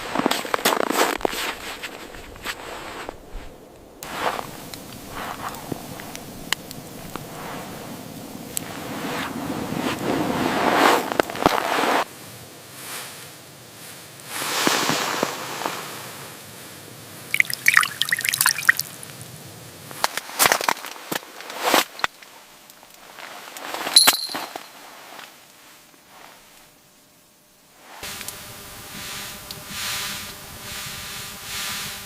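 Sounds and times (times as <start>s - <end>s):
water splashing and dripping: 17.4s - 19.0s.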